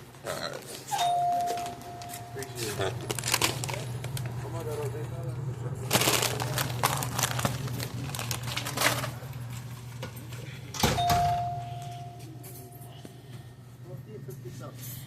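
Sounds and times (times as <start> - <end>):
clicks and rustling of items: 0.8 - 5.1, 5.9 - 11.2
store door chime: 0.9 - 2.8, 10.8 - 13.2.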